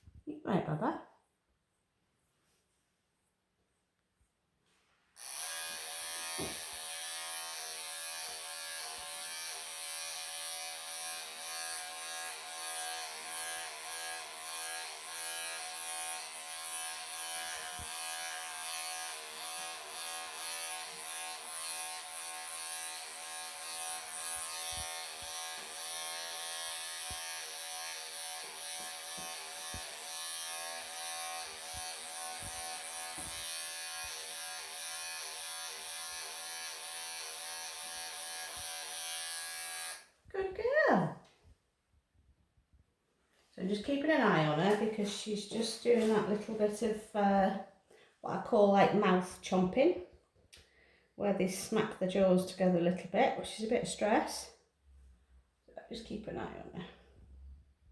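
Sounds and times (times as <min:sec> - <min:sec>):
electric pet clippers humming: 0:05.2 - 0:40.2, 0:44.2 - 0:46.6.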